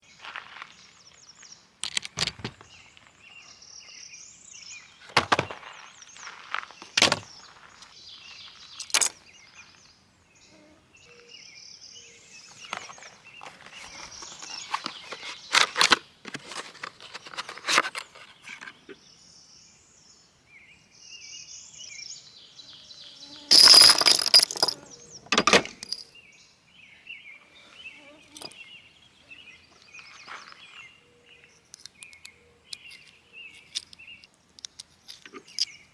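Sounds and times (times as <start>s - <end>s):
knocks and clicks of gear: 1.8s - 2.6s, 5.1s - 5.5s, 6.8s - 7.3s, 8.8s - 9.2s, 23.5s - 26.0s
birds chirping: 18.2s - 35.9s
gear clattering: 23.5s - 26.0s.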